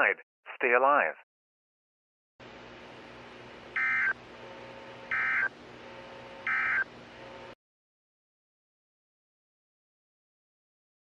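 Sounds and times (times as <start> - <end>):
digital data tone screech: 3.8 - 4.2, 5.1 - 5.5, 6.5 - 6.9.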